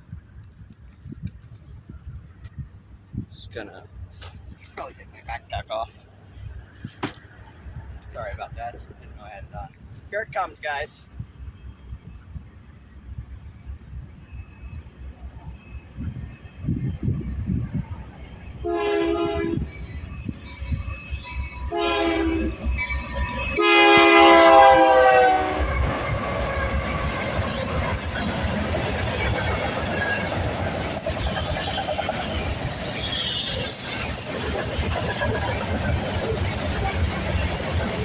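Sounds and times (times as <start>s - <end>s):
locomotive air horn blasts: 18.6s - 19.7s, 21.7s - 22.7s, 23.5s - 26.5s
train wheels clattering over rails: 25.6s - 38.0s.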